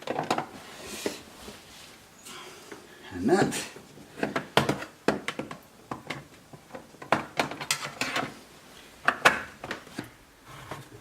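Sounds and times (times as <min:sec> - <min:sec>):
dishwasher parts clicking and knocking: 0:04.2 - 0:08.4.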